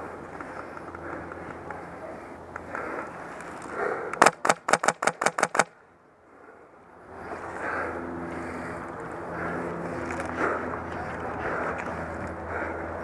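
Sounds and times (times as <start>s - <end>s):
outdoor background noise: 0.0s - 13.0s
airsoft rifle shots: 4.2s - 5.8s.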